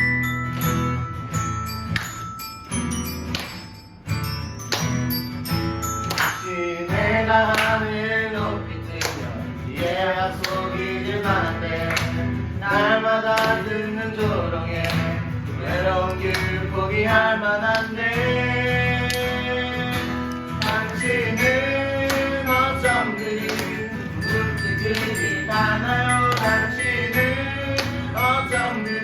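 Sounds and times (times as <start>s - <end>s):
instrumental accompaniment: 0.0s - 16.6s, 18.3s - 29.0s
group singing worship song: 6.8s - 28.8s.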